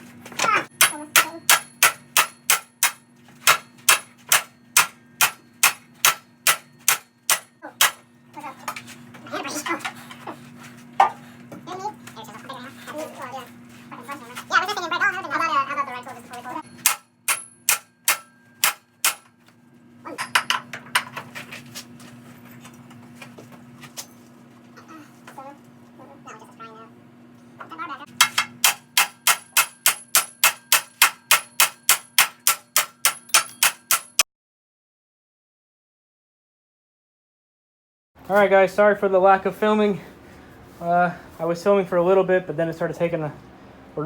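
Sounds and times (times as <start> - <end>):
hammer striking steel: 0.7 - 8.0, 16.6 - 19.3, 28.2 - 34.2
hammer blows on metal: 16.7 - 19.3
metal tools clinking and rattling: 20.1 - 21.6, 29.2 - 34.2.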